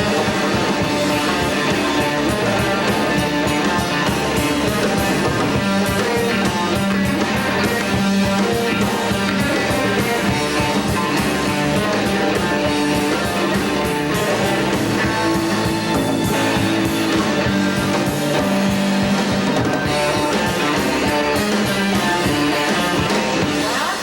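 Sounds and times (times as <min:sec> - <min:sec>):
rock band playing: 0:00.0 - 0:24.0.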